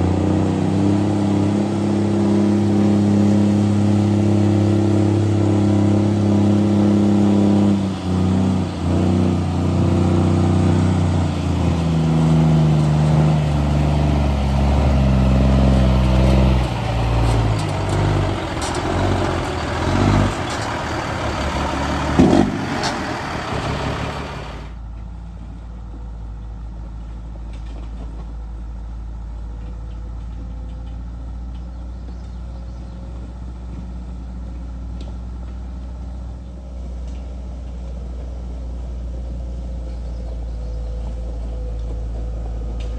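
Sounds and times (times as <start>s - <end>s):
diesel engine running: 0.0s - 25.5s, 39.2s - 42.9s
metal knocks and clanks: 16.0s - 24.6s.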